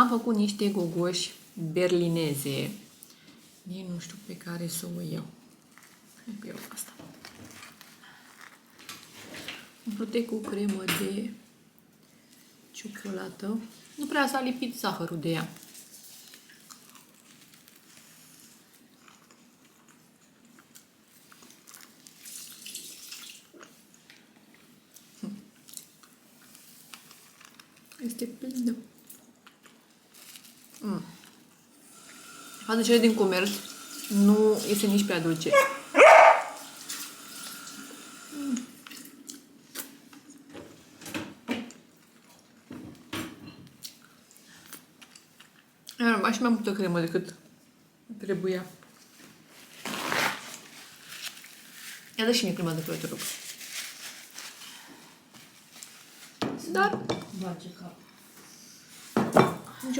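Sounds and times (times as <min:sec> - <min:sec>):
soft chewing: 0:05.4 - 0:09.2, 0:11.8 - 0:12.7, 0:15.4 - 0:31.7, 0:41.7 - 0:42.7, 0:43.6 - 0:46.0.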